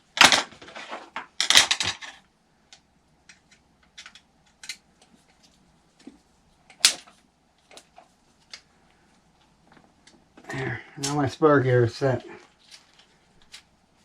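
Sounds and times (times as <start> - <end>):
rustling: 12.0 - 14.0.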